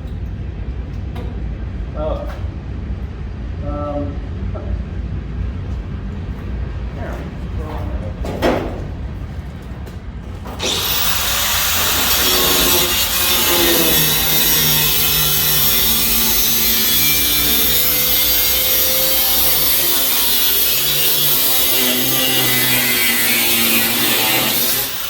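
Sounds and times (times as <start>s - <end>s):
power tool cutting sheet metal: 10.6s - 25.0s.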